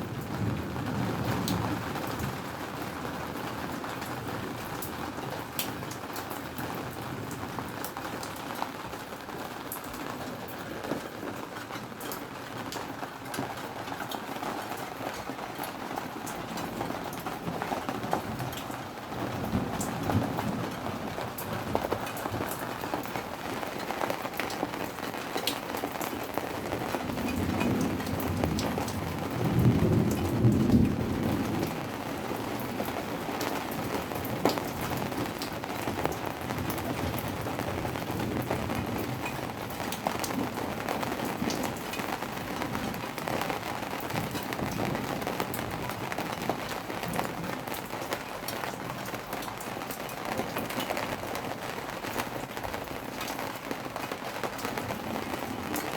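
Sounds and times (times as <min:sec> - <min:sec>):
low rumble of thunder: 0:00.0 - 0:05.5, 0:15.8 - 0:23.2, 0:26.6 - 0:49.1
steady rain falling: 0:00.0 - 0:55.9.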